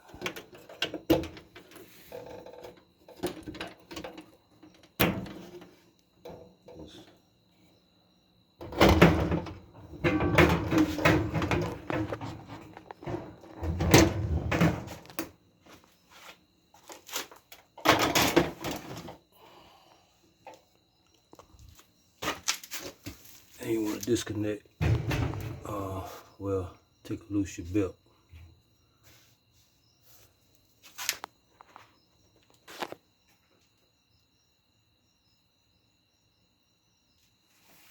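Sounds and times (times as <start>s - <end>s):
sheet metal clunking and scraping: 0.1s - 7.2s, 8.6s - 15.3s, 24.8s - 26.2s.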